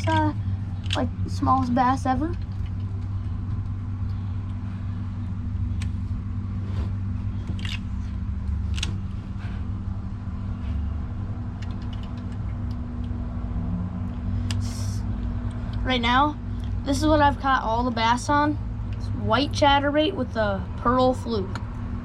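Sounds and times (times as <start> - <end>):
road traffic rumble: 0.0 - 22.0.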